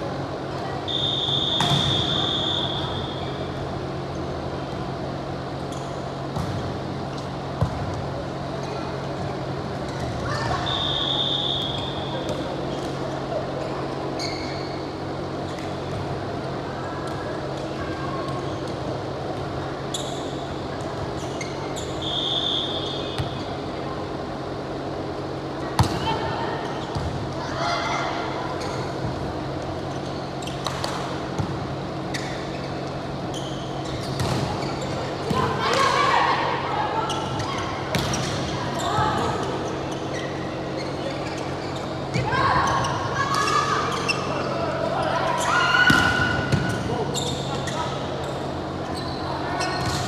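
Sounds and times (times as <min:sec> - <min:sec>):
indoor volleyball game noise: 0:00.0 - 0:50.0
sports hall hum: 0:00.0 - 0:50.0
high whistle blast: 0:00.9 - 0:03.3, 0:10.6 - 0:12.0, 0:22.0 - 0:23.0
shoe squeaks: 0:14.0 - 0:14.9, 0:19.8 - 0:23.6, 0:29.8 - 0:30.7, 0:32.0 - 0:35.4, 0:37.0 - 0:44.6, 0:46.9 - 0:50.0.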